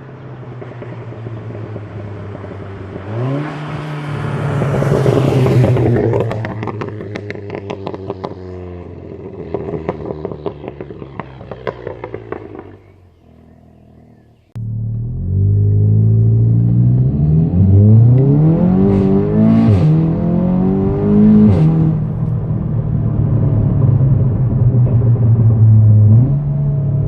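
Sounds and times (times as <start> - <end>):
car engine revving: 0.0 - 27.0
exhaust crackling and popping: 4.6 - 17.1.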